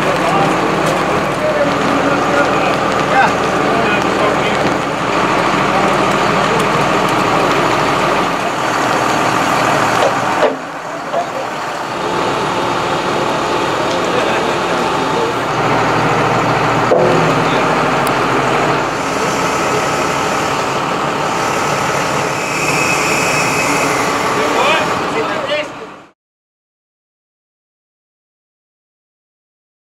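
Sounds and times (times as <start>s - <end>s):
heavy vehicle engine running: 0.0s - 26.2s.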